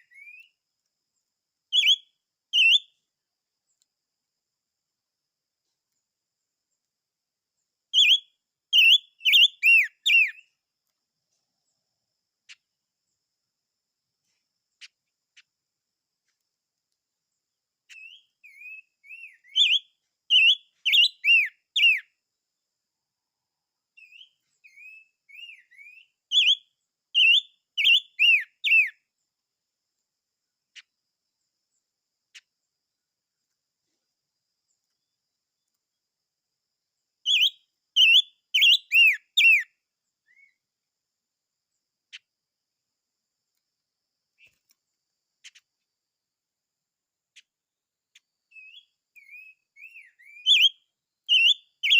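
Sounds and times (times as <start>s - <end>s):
songbird whistling: 0.0s - 0.6s, 1.7s - 3.0s, 8.0s - 10.5s, 17.9s - 22.1s, 24.0s - 29.0s, 37.2s - 40.6s, 48.5s - 51.9s
faint clicks: 44.4s - 45.8s.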